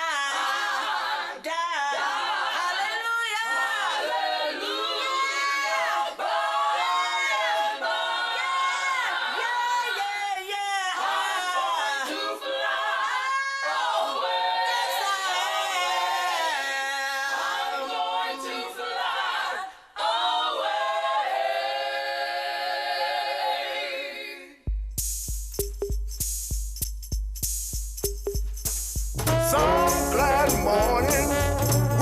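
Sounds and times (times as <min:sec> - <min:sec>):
choir singing unaccompanied: 0:00.1 - 0:24.6, 0:29.3 - 0:32.0
deep bass thumps: 0:24.7 - 0:32.0
tambourine-like jingles: 0:25.0 - 0:32.0.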